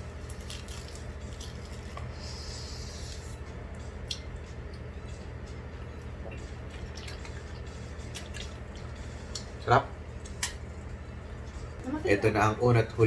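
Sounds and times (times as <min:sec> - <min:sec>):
steady low hum: 0:00.0 - 0:13.0
wet chewing and clicks: 0:00.2 - 0:02.1, 0:04.0 - 0:04.8, 0:06.3 - 0:09.6, 0:10.2 - 0:10.6.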